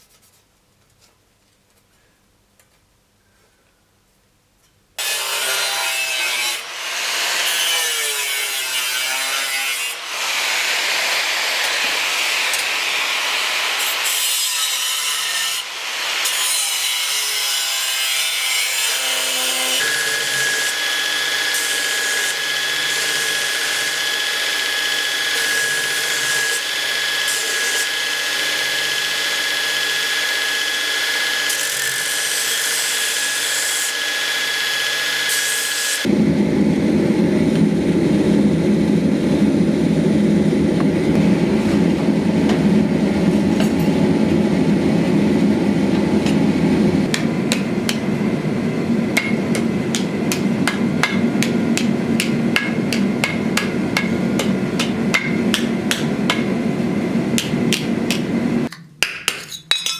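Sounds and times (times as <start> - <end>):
scraping and sawing wood: 5.0 - 36.1.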